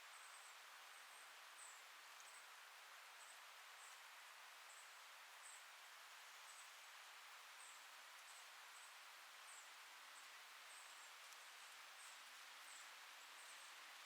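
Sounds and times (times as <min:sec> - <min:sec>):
wind in leaves: 0:00.0 - 0:14.0.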